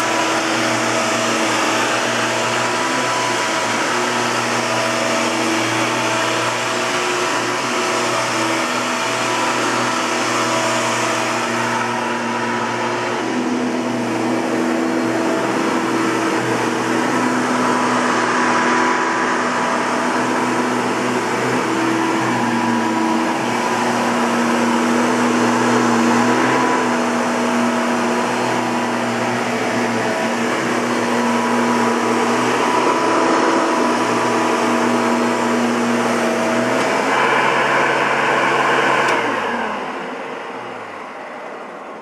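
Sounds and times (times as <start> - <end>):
motor winding down: 0.0 - 41.0
vacuum cleaner running: 0.0 - 42.0.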